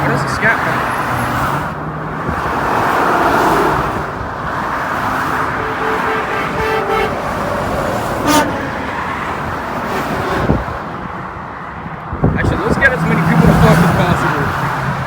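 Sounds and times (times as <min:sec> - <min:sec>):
highway road noise: 0:00.0 - 0:15.0
vehicle horn honking: 0:05.2 - 0:09.2.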